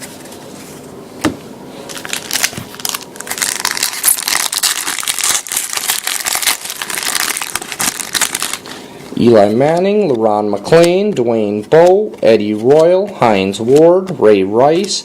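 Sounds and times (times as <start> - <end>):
card pack wrapper crinkling: 1.9 - 8.9.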